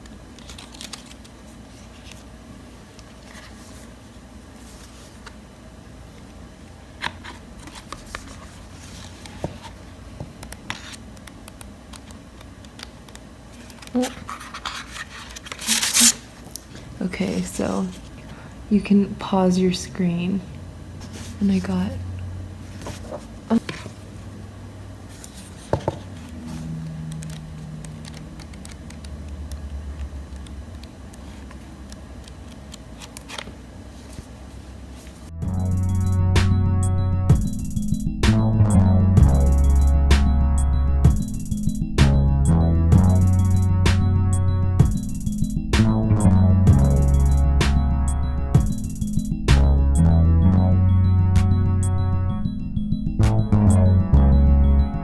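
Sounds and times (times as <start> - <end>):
low room hum: 0.0 - 55.0
paper or plastic rustling: 0.4 - 2.3, 13.6 - 16.9, 22.6 - 24.1
music with drums: 37.3 - 40.4, 41.0 - 47.9, 48.5 - 50.0.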